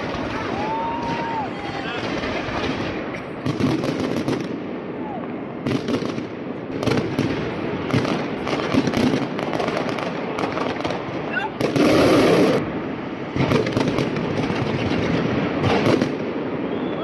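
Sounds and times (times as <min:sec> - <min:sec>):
fireworks crackling and popping: 0:00.0 - 0:17.0
noisy rumble: 0:01.2 - 0:16.9.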